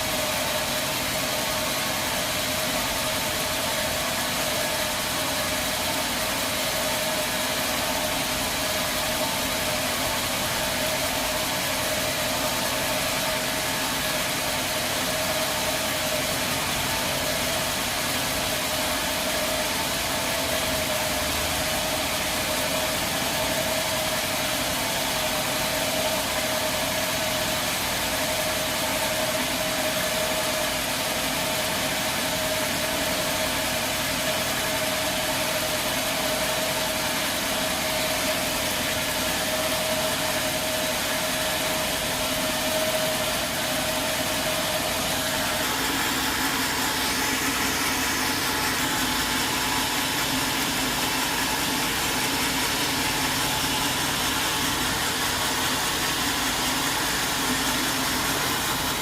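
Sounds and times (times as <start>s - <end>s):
sawmill machinery running: 0.0s - 59.0s.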